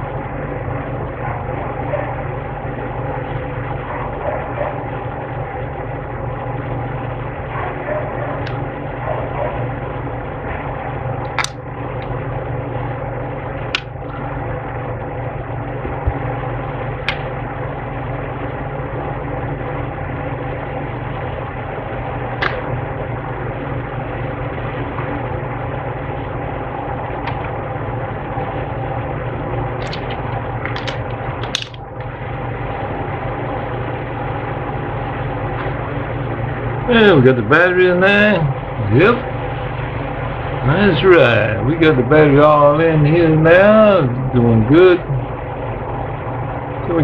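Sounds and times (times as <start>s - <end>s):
steady machine hum: 0.0s - 47.0s
sharp clicks of small parts: 29.8s - 31.8s.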